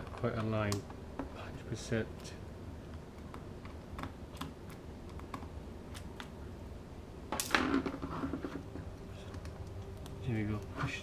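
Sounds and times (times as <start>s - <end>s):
scraping noise: 7.9s - 8.6s.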